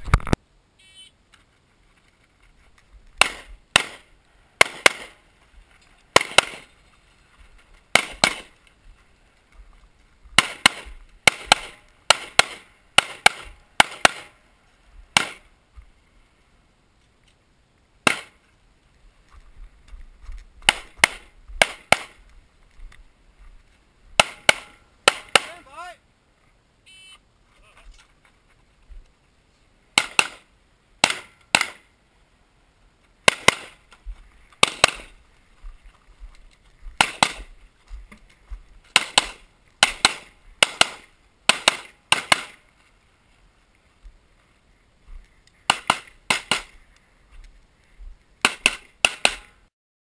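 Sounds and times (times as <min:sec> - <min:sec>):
pistol shots in quick pairs: 0:03.2 - 0:05.2, 0:06.2 - 0:06.7, 0:07.9 - 0:08.5, 0:10.4 - 0:14.3, 0:18.0 - 0:18.3, 0:20.7 - 0:22.2, 0:24.2 - 0:25.6, 0:30.0 - 0:30.4, 0:31.0 - 0:31.8, 0:33.3 - 0:33.8, 0:34.6 - 0:35.1, 0:37.0 - 0:37.5, 0:38.9 - 0:42.6, 0:45.7 - 0:46.7, 0:48.4 - 0:49.5.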